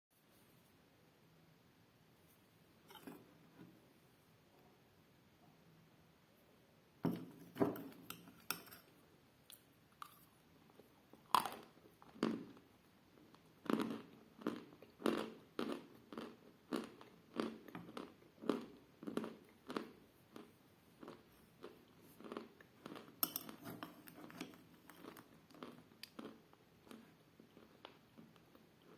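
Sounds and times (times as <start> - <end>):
steady chewing: 13.4 - 28.0.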